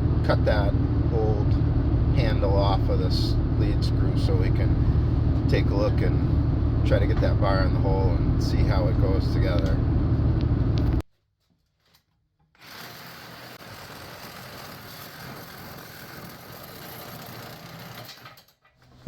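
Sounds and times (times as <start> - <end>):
loud low hum: 0.0 - 11.0
saw cutting through steel rod: 12.6 - 18.2.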